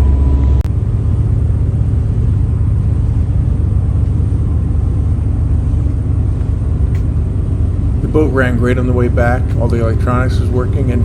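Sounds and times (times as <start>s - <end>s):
boat engine drone: 0.0s - 11.0s
hull and water noise: 0.0s - 11.0s.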